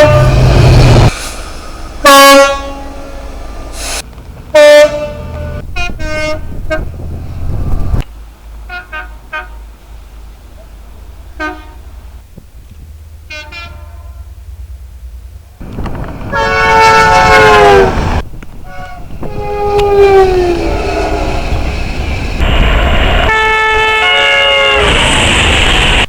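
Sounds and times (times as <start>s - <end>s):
train horn: 0.0s - 0.7s, 2.0s - 3.4s, 4.5s - 6.9s, 8.7s - 9.6s, 11.4s - 11.9s, 13.3s - 14.4s, 16.3s - 21.6s, 23.2s - 25.1s
train running noise: 0.0s - 26.0s.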